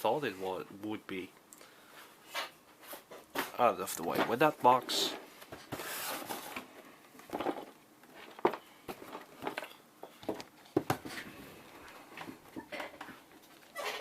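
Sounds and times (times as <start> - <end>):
cardboard rustling and sliding: 4.1 - 6.8.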